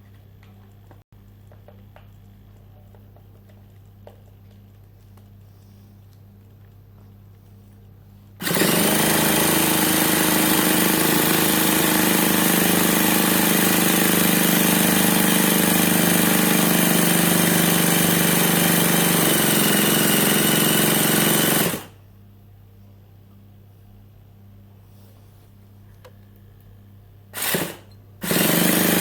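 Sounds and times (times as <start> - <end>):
starter cranking engine: 8.4 - 22.0, 27.4 - 29.0.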